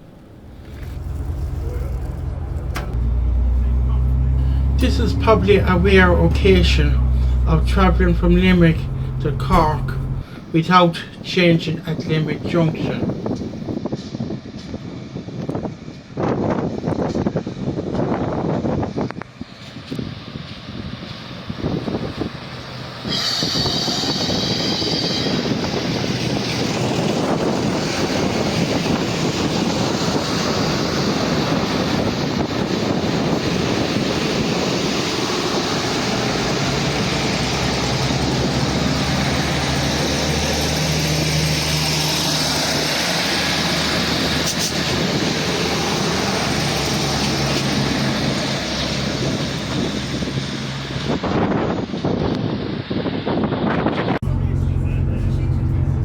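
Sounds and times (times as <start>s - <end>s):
diesel railcars running: 0.0s - 56.0s
high wheel squeal: 22.5s - 26.8s.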